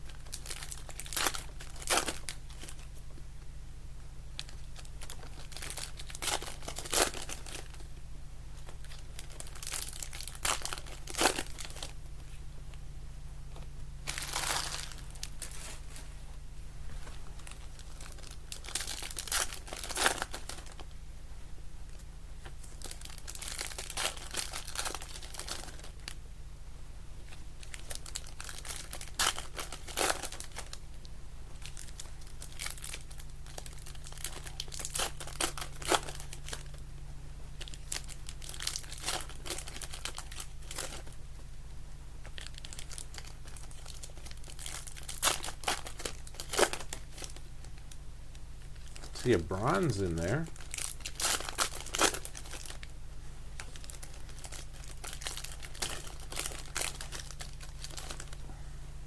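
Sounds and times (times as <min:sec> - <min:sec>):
steady low hum: 0:00.0 - 0:59.0
card wrappers crinkling and tearing: 0:00.1 - 0:02.9, 0:04.4 - 0:07.9, 0:08.6 - 0:12.0, 0:14.0 - 0:15.9, 0:17.1 - 0:20.9, 0:22.6 - 0:26.2, 0:27.6 - 0:30.8, 0:31.6 - 0:36.8, 0:37.6 - 0:41.2, 0:42.2 - 0:47.9, 0:48.7 - 0:52.9, 0:53.6 - 0:58.4.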